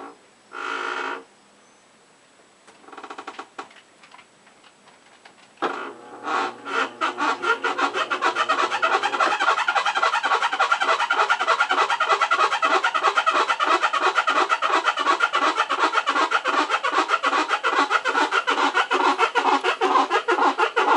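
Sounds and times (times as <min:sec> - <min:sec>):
washing machine squeaking: 0:05.8 - 0:13.3.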